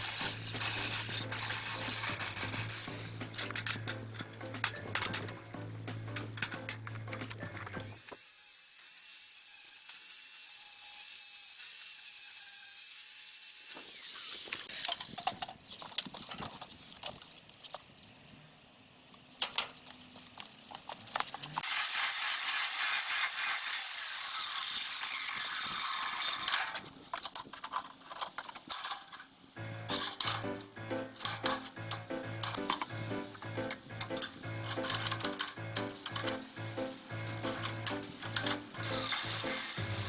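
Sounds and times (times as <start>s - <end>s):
arc welder crackling hiss: 0.0s - 7.1s, 29.6s - 40.0s.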